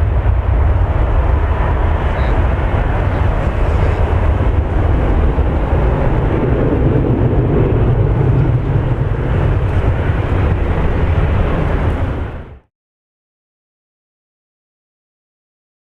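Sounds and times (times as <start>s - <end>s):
jet engines rumbling: 0.0s - 12.7s.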